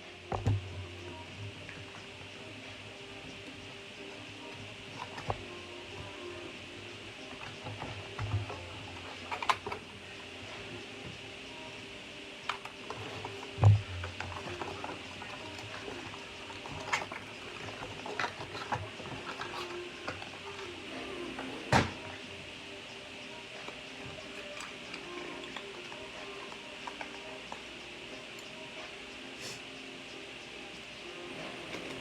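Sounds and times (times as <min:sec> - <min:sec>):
soft background music: 0:00.0 - 0:32.0
packaging clicks and rustles: 0:12.5 - 0:22.2.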